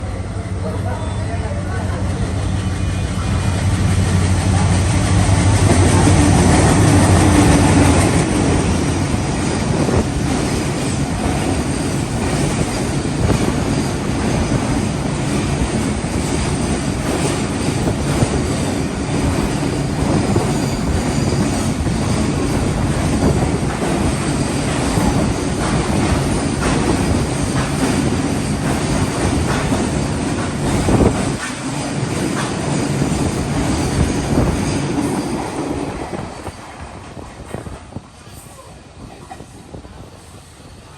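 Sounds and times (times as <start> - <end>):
locomotive engine hum: 0.0 - 16.0
freight wagons rattling over rail joints: 5.9 - 36.4.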